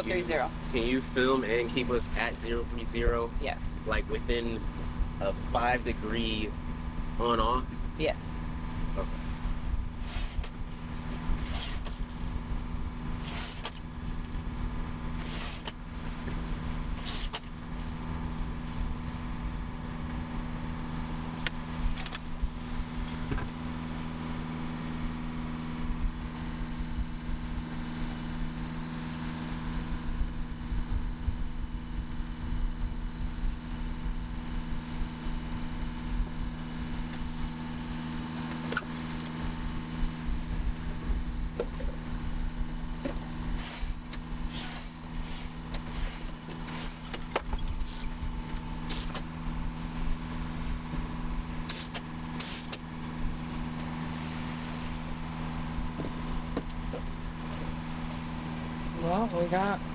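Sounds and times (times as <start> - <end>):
boat engine droning: 0.0 - 59.9
wind and water rumble: 0.0 - 59.9.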